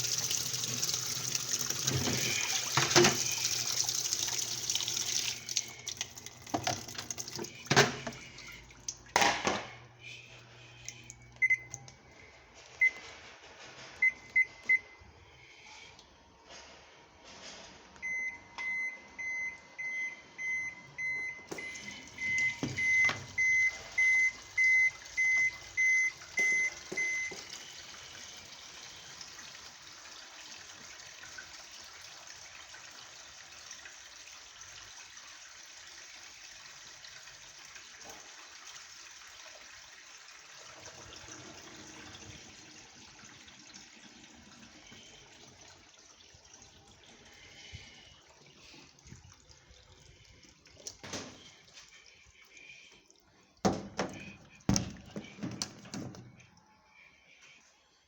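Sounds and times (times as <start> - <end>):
washing machine beeping: 0.0 - 8.7, 11.1 - 15.2, 18.0 - 29.6, 53.7 - 57.6
water running into tub: 0.0 - 10.0, 21.4 - 56.5.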